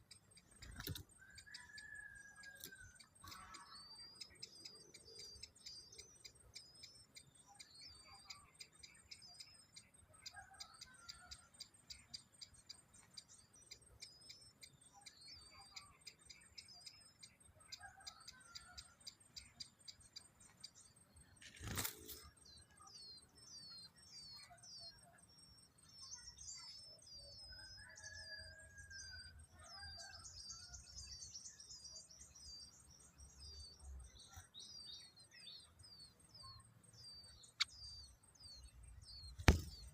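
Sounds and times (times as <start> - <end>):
small birds chirping: 0.0 - 39.9
sharp click: 39.3 - 39.9.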